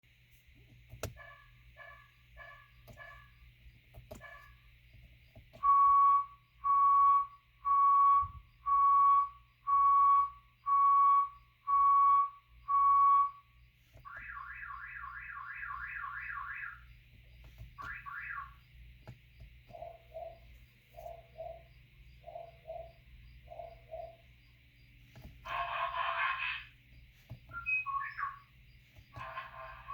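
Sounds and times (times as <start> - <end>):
electronic car horn beeps: 5.6 - 13.5, 14.1 - 16.8, 17.8 - 18.6.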